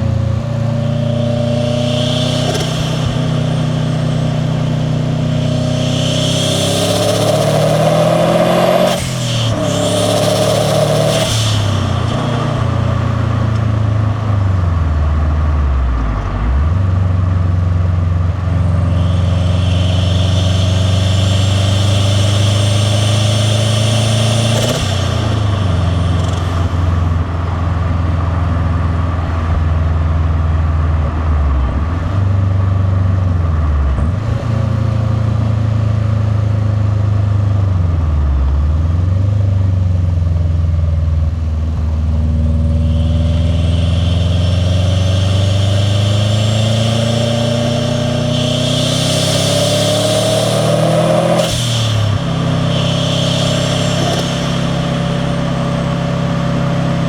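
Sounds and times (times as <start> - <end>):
blow-off valve release: 0.0 - 14.4, 18.4 - 28.7, 41.6 - 57.0
car engine revving through gears: 0.0 - 57.0
turbo whistle: 0.3 - 13.5, 18.6 - 27.3, 42.6 - 57.0.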